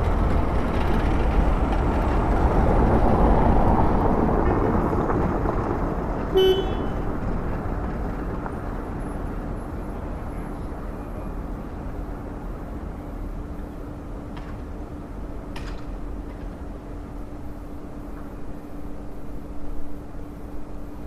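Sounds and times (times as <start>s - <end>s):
car horn toot: 6.3s - 7.1s.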